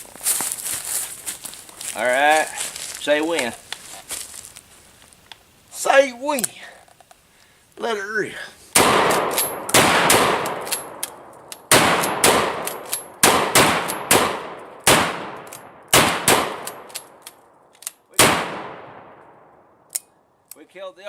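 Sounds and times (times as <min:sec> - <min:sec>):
loud gunshots: 0:08.8 - 0:10.7, 0:11.7 - 0:12.6, 0:13.2 - 0:16.6, 0:18.2 - 0:19.2.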